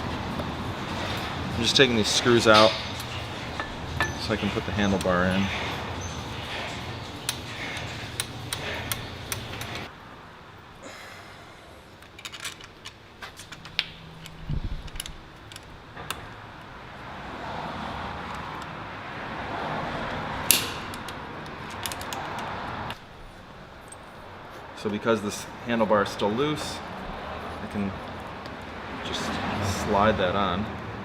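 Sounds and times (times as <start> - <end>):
metal screws and tool clinking: 2.1 - 9.9, 12.0 - 16.2, 20.6 - 22.5.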